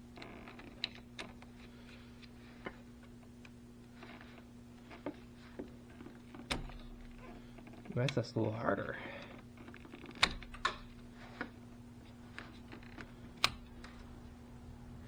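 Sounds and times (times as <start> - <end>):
steady low hum: 0.0 - 15.0
tools clicking and snipping: 6.4 - 8.2, 9.6 - 11.5, 12.4 - 14.0.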